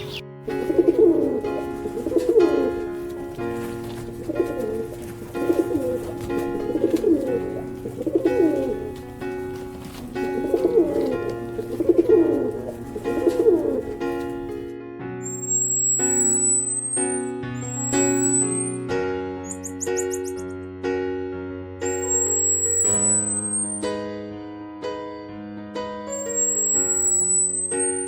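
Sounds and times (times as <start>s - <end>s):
bird giving low calls: 0.0s - 14.6s
background music: 0.0s - 23.7s.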